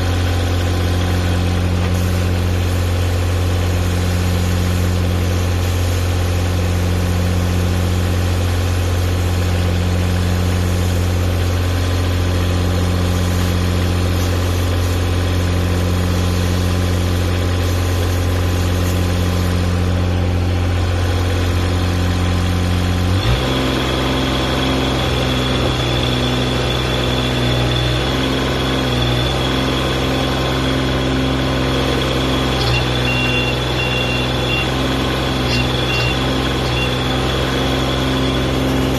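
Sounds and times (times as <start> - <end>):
excavator engine running: 0.0 - 38.9
high whine: 24.5 - 38.9
short high beeps: 32.6 - 34.8, 35.5 - 37.0.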